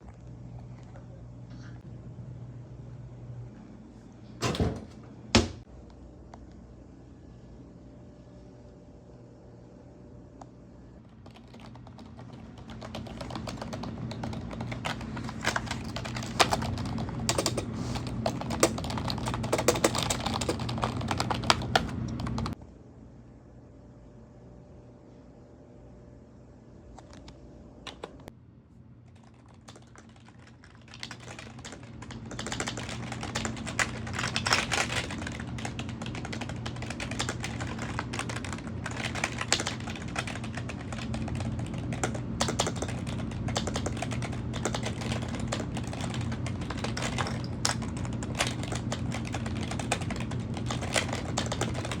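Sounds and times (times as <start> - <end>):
computer keyboard typing: 11.0 - 22.6, 27.0 - 28.3, 29.1 - 52.0.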